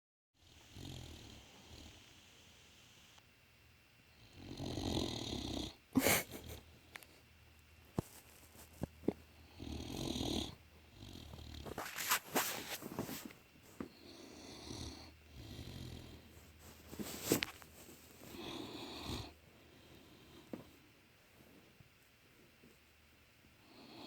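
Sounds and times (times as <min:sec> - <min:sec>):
dog snoring: 0:00.4 - 0:02.3, 0:04.1 - 0:06.6, 0:09.0 - 0:12.2, 0:13.9 - 0:16.4, 0:18.2 - 0:20.6, 0:23.6 - 0:24.0.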